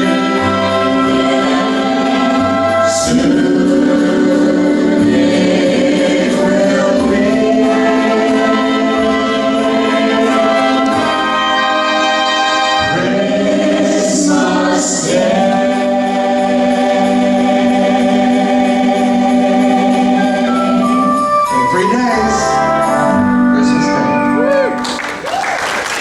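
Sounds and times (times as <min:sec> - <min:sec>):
man and woman singing: 0:12.7 - 0:21.7.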